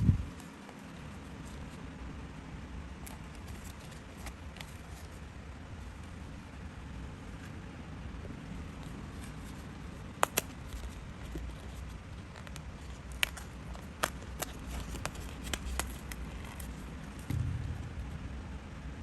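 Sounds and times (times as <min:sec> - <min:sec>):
low steady hum: 0:00.0 - 0:19.0
clicks of paper and craft tools: 0:10.2 - 0:17.3
soft low thump: 0:17.3 - 0:18.4.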